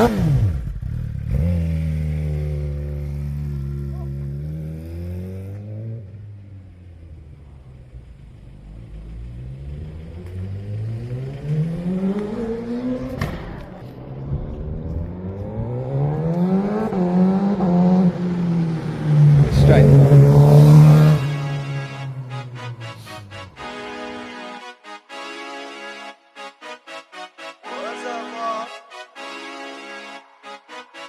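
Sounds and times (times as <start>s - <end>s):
motorcycle engine revving: 0.0s - 22.6s.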